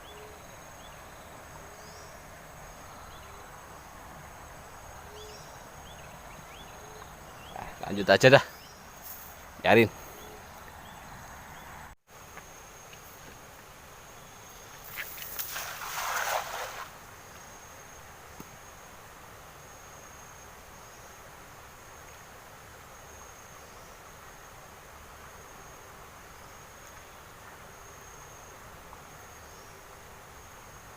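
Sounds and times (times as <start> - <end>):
crickets chirring: 0.0 - 21.3.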